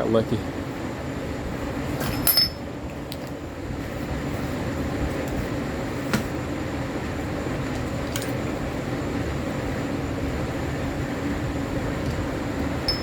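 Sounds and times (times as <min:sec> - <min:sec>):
metallic clink: 0:02.0 - 0:02.6.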